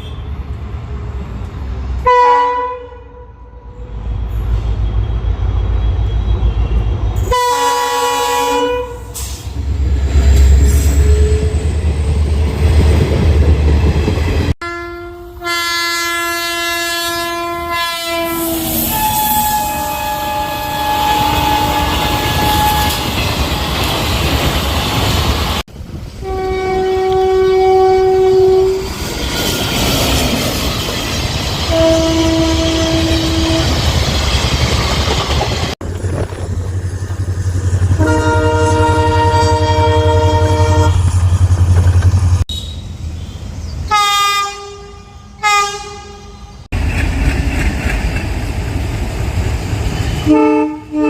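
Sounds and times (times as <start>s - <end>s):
locomotive horn blasts: 2.0s - 3.8s, 5.8s - 9.3s, 14.6s - 23.7s, 26.2s - 28.8s, 31.7s - 33.8s, 37.9s - 41.1s, 43.9s - 46.6s, 50.2s - 51.0s
train rumbling and clattering: 3.9s - 14.6s, 18.4s - 43.9s, 46.6s - 50.9s.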